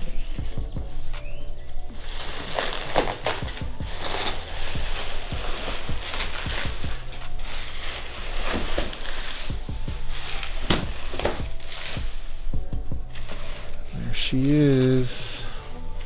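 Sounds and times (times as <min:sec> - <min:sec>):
packaging crinkling: 0:00.0 - 0:16.0.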